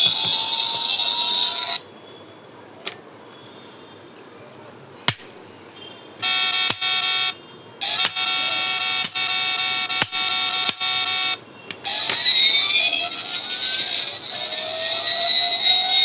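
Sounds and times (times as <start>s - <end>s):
sharp clicks: 5.1s - 5.3s, 6.2s - 12.8s
electronic buzzing tone: 6.2s - 12.2s.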